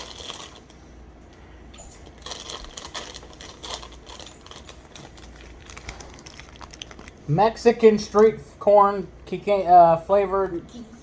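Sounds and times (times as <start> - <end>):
plastic packaging crinkling: 0.0 - 0.8, 2.0 - 7.3
small rustles and clicks: 0.0 - 7.2.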